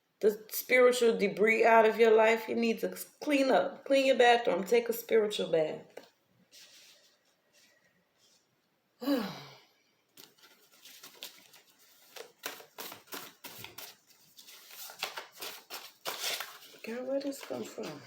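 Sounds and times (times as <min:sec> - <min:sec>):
cards being shuffled: 0:10.2 - 0:18.0.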